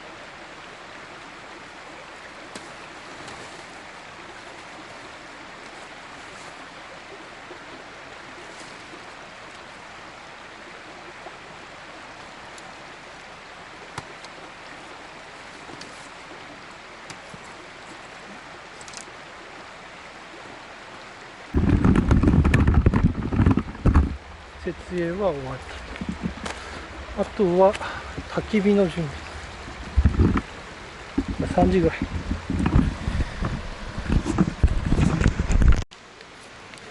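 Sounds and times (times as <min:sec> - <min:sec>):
stream flowing: 0:00.0 - 0:36.9
faint clicks and knocks: 0:29.6 - 0:30.5.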